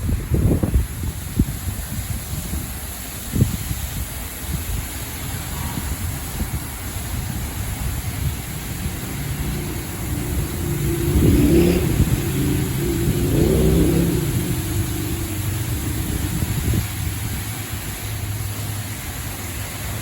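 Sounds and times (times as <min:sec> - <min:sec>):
car wash machinery rumbling: 0:00.0 - 0:20.0.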